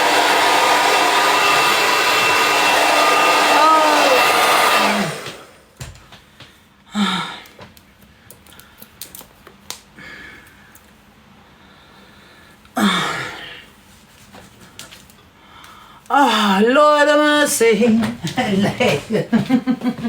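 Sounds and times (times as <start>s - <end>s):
breathy sighs: 12.8s - 13.6s.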